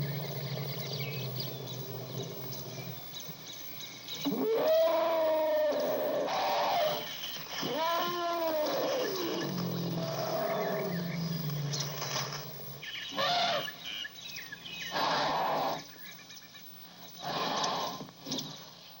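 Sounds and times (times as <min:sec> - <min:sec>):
low steady rumble: 0:00.0 - 0:04.2
small birds chirping: 0:00.0 - 0:19.0
elephant calling: 0:04.1 - 0:16.3.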